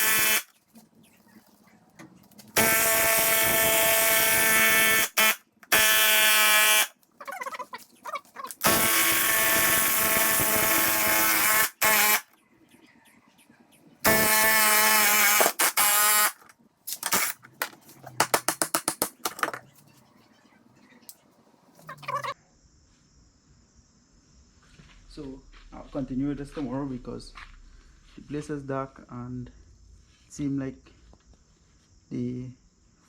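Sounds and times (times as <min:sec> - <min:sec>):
power tool buzzing whine: 0:00.0 - 0:00.5, 0:02.6 - 0:07.0, 0:08.6 - 0:12.3, 0:14.0 - 0:16.5.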